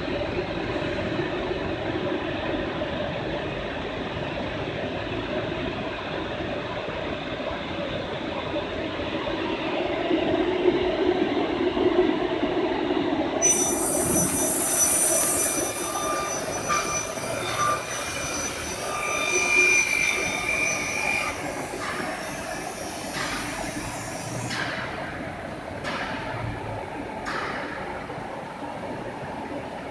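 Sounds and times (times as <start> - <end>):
high-pitched screeching whine: 13.4 - 25.0
cnc router machine noise: 13.4 - 25.2.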